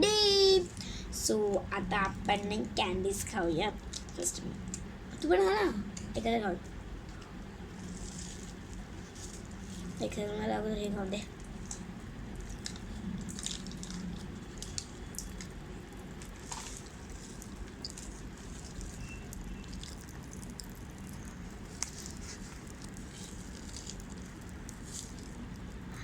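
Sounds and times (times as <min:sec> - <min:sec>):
popping candy crackling in mouth: 0:11.4 - 0:26.0.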